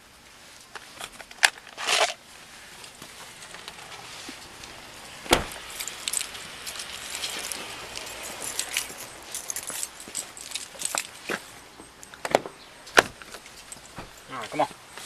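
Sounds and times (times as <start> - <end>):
loud thump: 5.2 - 5.7
light jangling: 5.5 - 12.2, 13.2 - 14.3.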